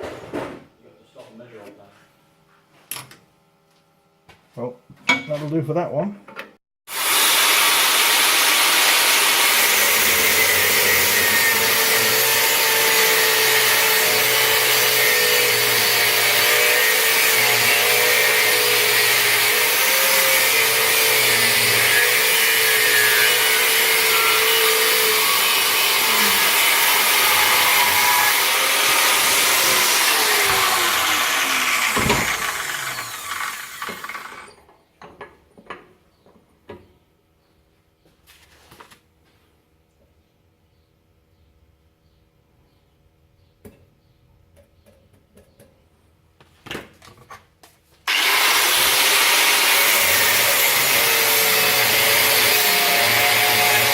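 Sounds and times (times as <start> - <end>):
power tool rasping: 6.9 - 34.6, 48.1 - 53.9
motor spinning down: 25.2 - 34.6.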